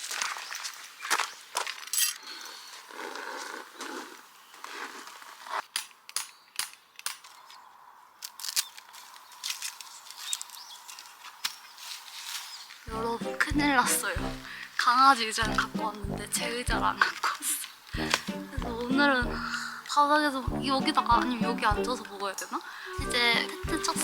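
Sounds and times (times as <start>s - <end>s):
tent poles clicking and knocking: 4.6s - 7.6s, 8.2s - 12.2s.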